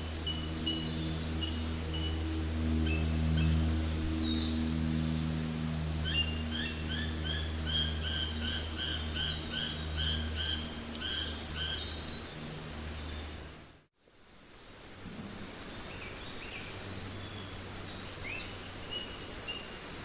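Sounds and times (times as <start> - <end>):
low steady drone: 0.0 - 13.8.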